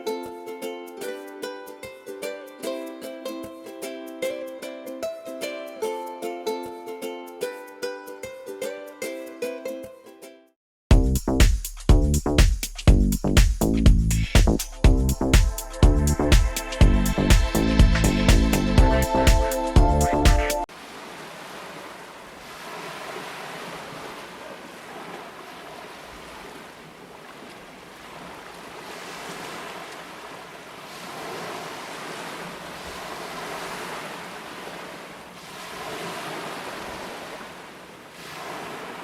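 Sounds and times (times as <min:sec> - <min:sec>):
lake waves washing onto shore: 0:20.3 - 0:39.0.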